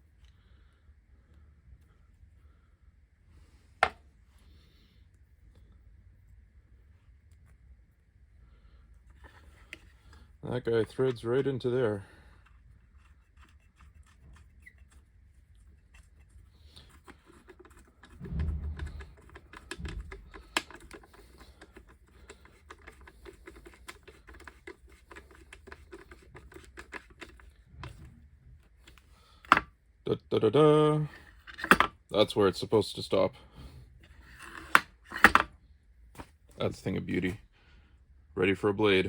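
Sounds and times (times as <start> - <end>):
low thumps: 18.2 - 20.5.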